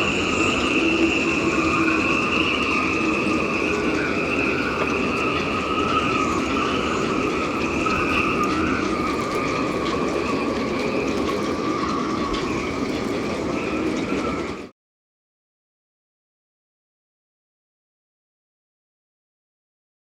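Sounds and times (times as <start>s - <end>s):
high whistling tones: 0.0s - 14.6s
wind howling through rigging: 0.0s - 14.7s.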